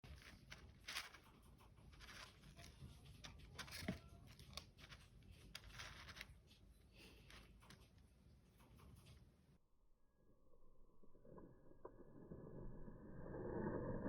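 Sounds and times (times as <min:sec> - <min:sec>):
rustling and scratching: 0:00.0 - 0:09.6.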